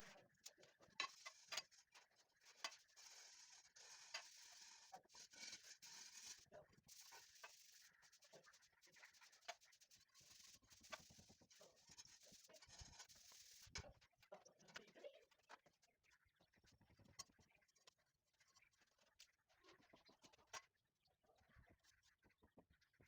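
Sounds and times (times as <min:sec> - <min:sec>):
faint clicks and taps: 0:00.0 - 0:04.7, 0:07.0 - 0:15.8, 0:16.6 - 0:20.8.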